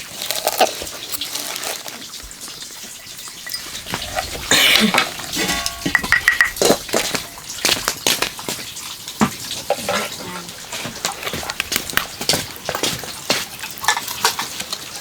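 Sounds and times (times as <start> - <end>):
dishes and utensils clattering: 0.0 - 15.0.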